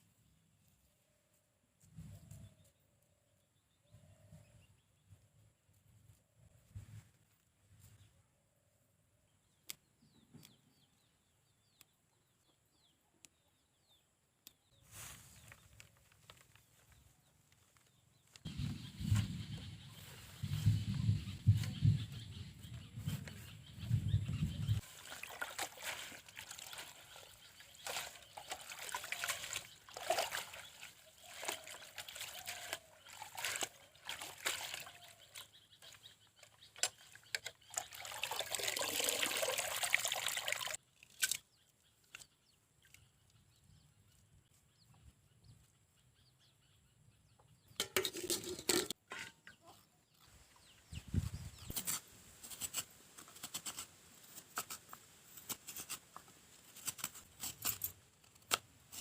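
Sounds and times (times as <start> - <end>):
liquid trickling or pouring: 24.8 - 35.2, 37.4 - 41.4.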